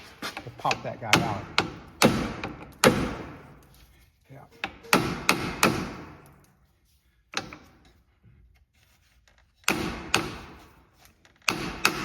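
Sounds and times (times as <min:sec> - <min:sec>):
hammer strikes on metal: 0:01.1 - 0:03.4, 0:04.6 - 0:06.2, 0:09.6 - 0:10.6, 0:11.5 - 0:12.0.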